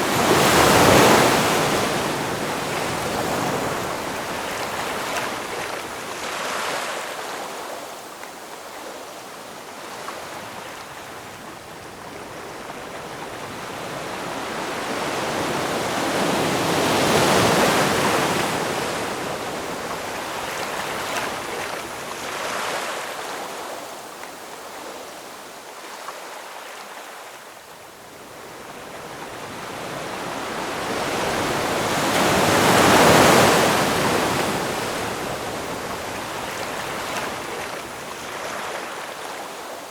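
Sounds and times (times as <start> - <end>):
ocean waves breaking: 0.0 - 7.8, 28.7 - 39.9.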